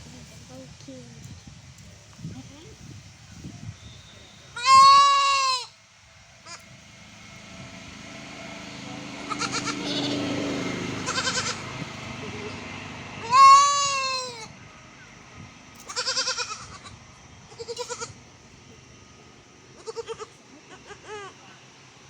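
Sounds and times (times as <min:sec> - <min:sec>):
goat kid bleating: 0:04.6 - 0:05.7, 0:09.3 - 0:10.2, 0:11.0 - 0:11.7, 0:13.2 - 0:14.5, 0:15.8 - 0:18.2, 0:19.8 - 0:21.4.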